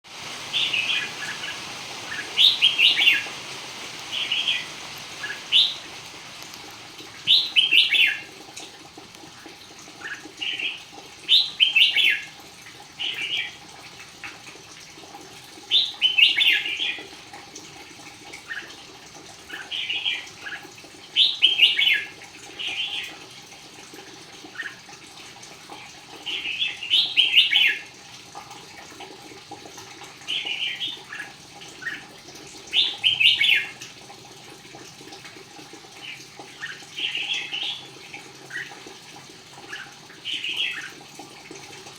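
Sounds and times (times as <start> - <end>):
steady hiss: 0.1 - 8.3
bird singing chirpy phrases: 0.5 - 3.4, 4.1 - 6.0, 39.7 - 40.9.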